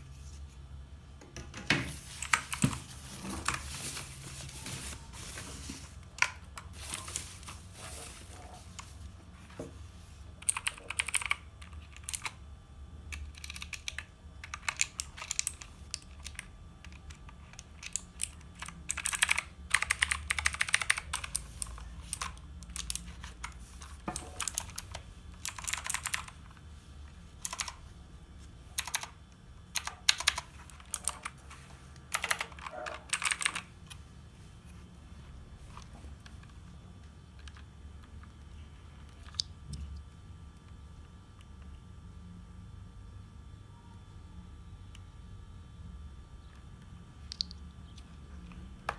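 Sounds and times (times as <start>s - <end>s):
mechanical keyboard typing: 10.4s - 12.4s, 13.1s - 26.5s, 27.4s - 27.8s, 28.7s - 31.4s, 32.1s - 34.0s.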